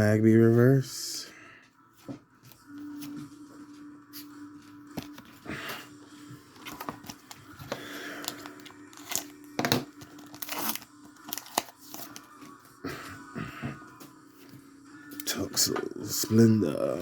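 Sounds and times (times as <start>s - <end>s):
cards rustling: 4.6s - 5.4s, 6.5s - 12.6s
foil wrapper tearing and crinkling: 8.2s - 12.4s.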